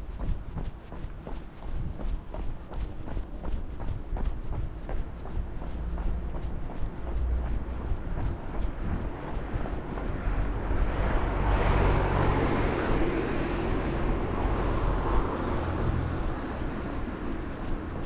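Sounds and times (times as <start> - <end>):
steady low rumble: 0.0 - 18.0
car passing by: 5.4 - 18.0.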